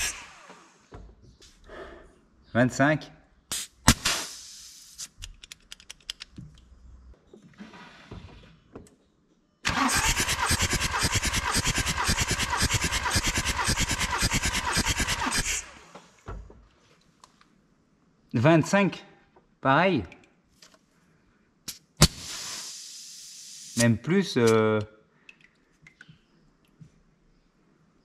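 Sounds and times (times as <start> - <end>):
diesel engine cranking on starter: 0.0 - 0.8, 9.6 - 16.2
clicks and knocks of tools: 5.2 - 6.7.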